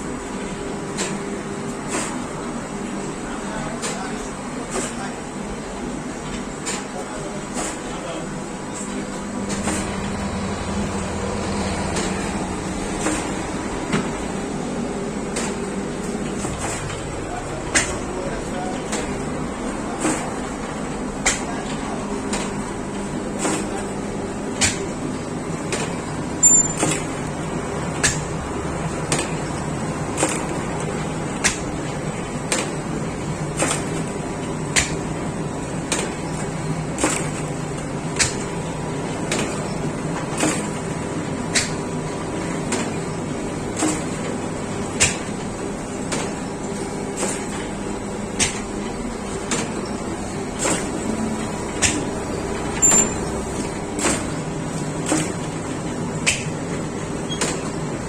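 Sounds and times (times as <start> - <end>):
machinery humming: 9.0 - 36.9.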